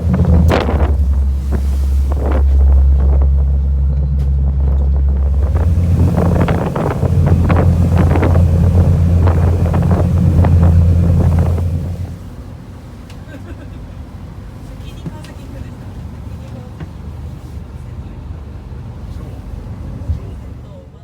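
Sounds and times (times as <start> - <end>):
wind buffeting microphone: 0.0 - 12.7
boat engine drone: 0.0 - 14.7.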